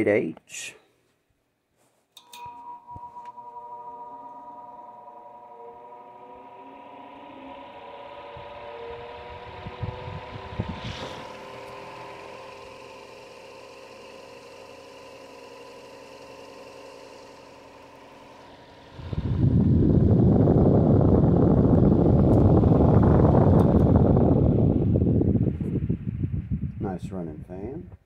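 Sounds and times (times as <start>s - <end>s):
electric fan motor hum: 2.2s - 27.8s
wind noise on microphone: 8.2s - 11.8s, 18.9s - 28.0s.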